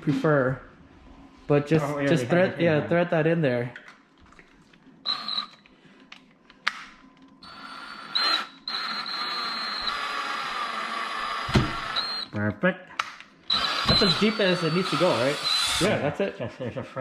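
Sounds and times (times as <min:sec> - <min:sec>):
power drill driving a screw: 0:05.1 - 0:05.6, 0:07.4 - 0:12.3, 0:13.5 - 0:16.0.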